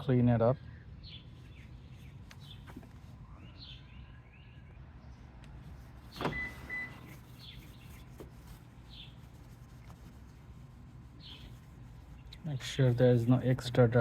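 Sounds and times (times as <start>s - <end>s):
small birds chirping: 0.2s - 14.0s.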